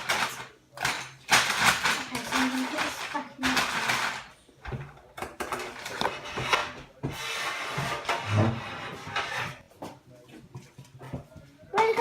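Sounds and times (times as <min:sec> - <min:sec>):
rubbing and scraping handling noise: 0:00.0 - 0:11.7.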